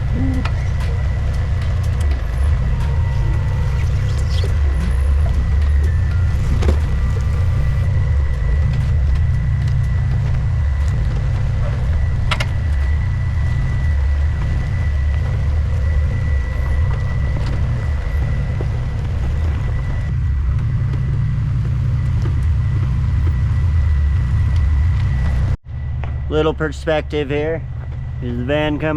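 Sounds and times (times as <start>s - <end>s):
van engine rumbling: 0.0s - 28.9s.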